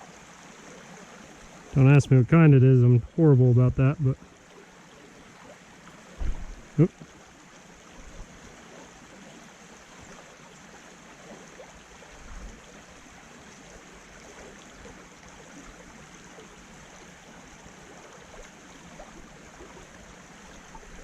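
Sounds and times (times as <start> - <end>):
creek water running: 0.0 - 21.0
low bump: 6.2 - 6.8.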